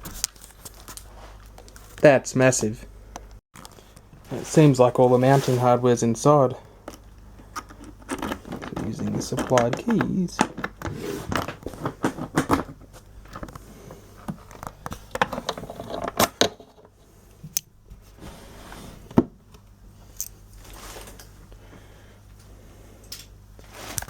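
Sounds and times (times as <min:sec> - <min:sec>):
keys working a lock: 0:07.5 - 0:10.6
clicks and knocks of plastic box: 0:07.6 - 0:13.6.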